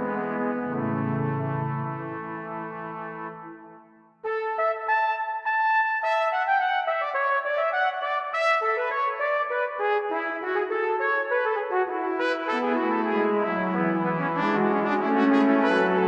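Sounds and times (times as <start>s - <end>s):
held low brass chord: 0.0s - 3.8s
trumpet-led brass tune: 0.0s - 16.0s.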